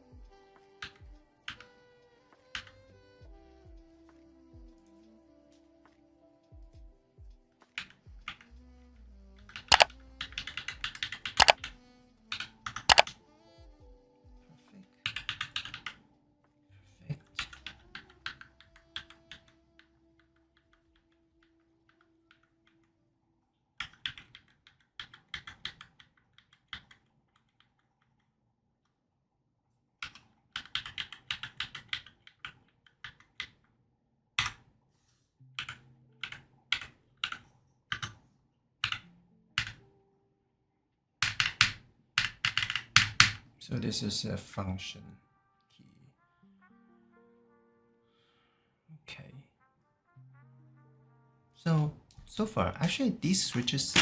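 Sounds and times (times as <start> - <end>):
mechanical keyboard clicks: 11.0 - 11.6, 12.9 - 13.1, 41.2 - 43.4, 53.4 - 54.0.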